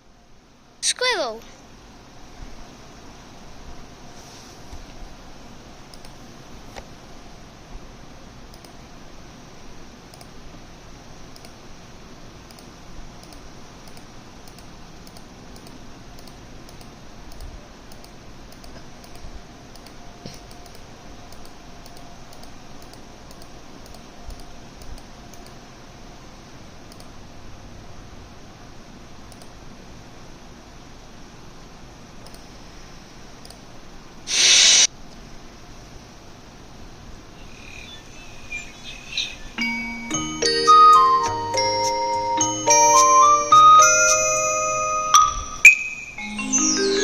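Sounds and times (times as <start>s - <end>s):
steady background hiss: 0.0s - 47.0s
faint irregular clicks: 5.9s - 6.9s, 8.5s - 8.8s, 10.1s - 10.4s, 11.3s - 11.6s, 12.4s - 25.6s, 26.9s - 27.2s, 29.3s - 29.6s, 32.2s - 32.5s, 33.4s - 33.7s.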